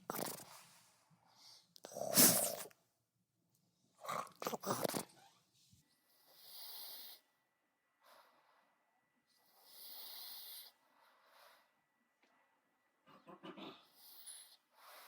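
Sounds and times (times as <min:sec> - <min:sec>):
dog breathing hard and snorting: 0:01.9 - 0:02.7.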